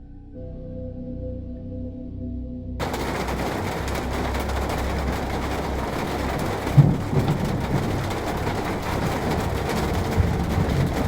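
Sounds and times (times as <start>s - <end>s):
low rumble: 2.2s - 11.0s
heavy rain pouring: 2.8s - 11.0s.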